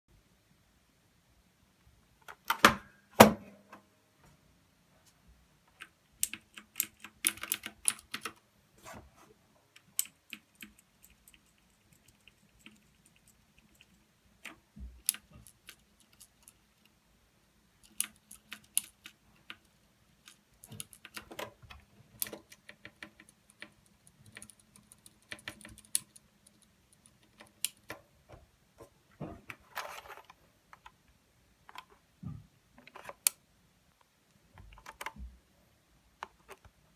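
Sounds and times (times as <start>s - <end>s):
mechanical keyboard clicks: 5.7s - 8.4s, 17.8s - 21.6s, 22.2s - 28.0s, 34.6s - 35.2s.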